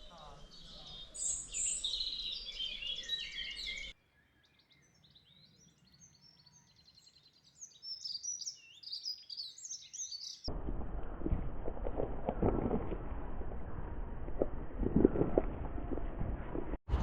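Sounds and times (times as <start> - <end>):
louder birdsong: 0.0 - 10.5
songbirds chirping and trilling: 0.0 - 10.5.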